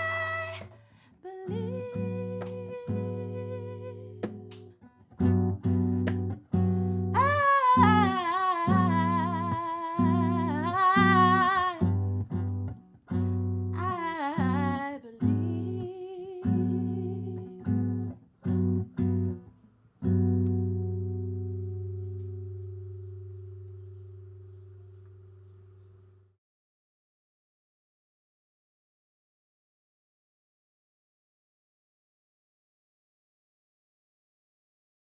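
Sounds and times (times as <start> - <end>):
wordless singing with vibrato: 0.0 - 4.5, 7.2 - 11.9, 13.8 - 17.6
plucked guitar chords: 1.5 - 19.4, 20.0 - 25.5.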